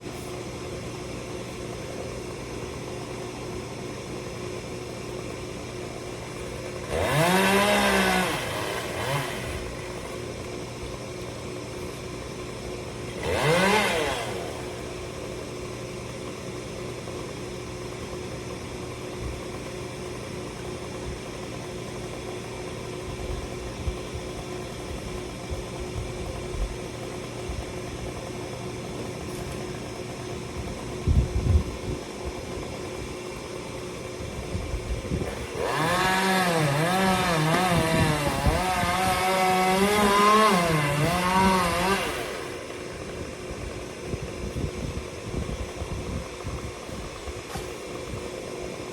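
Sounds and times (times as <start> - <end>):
chainsaw engine revving: 1.7 - 48.9.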